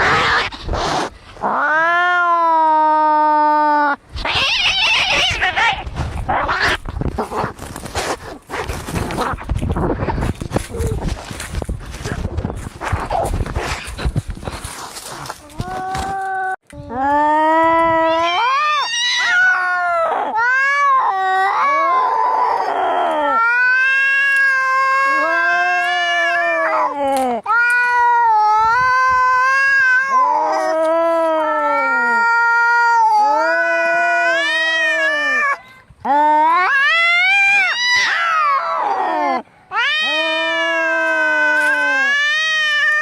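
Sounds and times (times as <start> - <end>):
cats yowling in a fight: 0.0 - 0.6, 1.4 - 7.2, 15.5 - 43.0.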